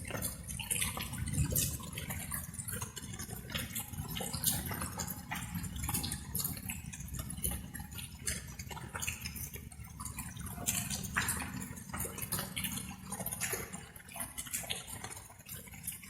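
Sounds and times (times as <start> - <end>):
rain drops dripping: 0.0 - 16.0.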